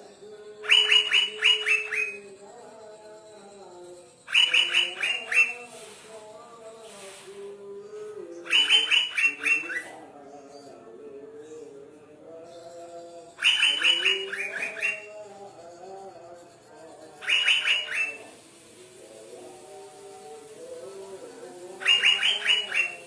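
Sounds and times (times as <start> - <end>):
bird calling falling notes: 0.6 - 2.3, 4.3 - 5.9, 8.5 - 9.9, 13.4 - 15.1, 17.2 - 18.4, 21.8 - 23.0.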